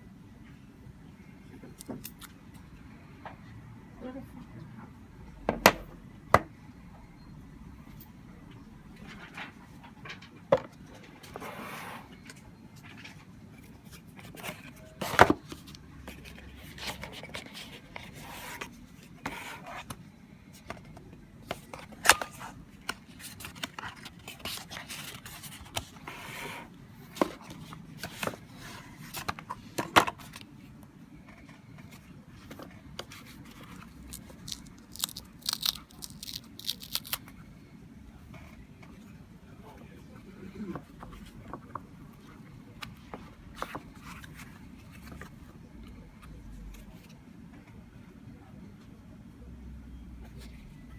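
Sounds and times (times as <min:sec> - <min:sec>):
packaging rustling and scraping: 0:11.2 - 0:19.9, 0:21.6 - 0:30.4, 0:31.4 - 0:37.3.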